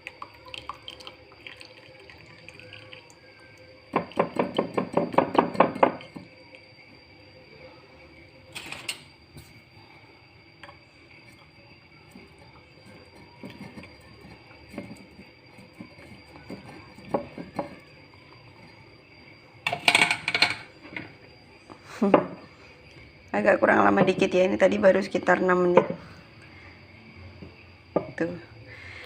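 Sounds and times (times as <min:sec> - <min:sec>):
kitchen utensils clinking: 0:08.5 - 0:09.1, 0:19.6 - 0:21.1.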